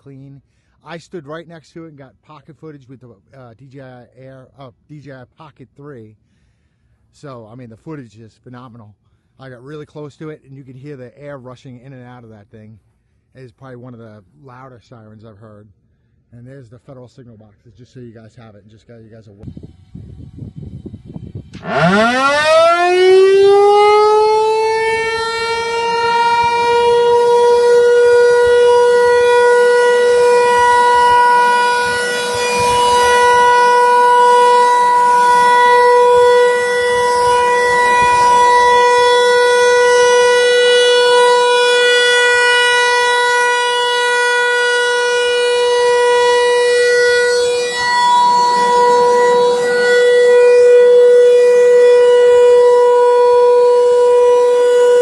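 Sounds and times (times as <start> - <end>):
outdoor warning siren steady tone: 19.4 - 55.0.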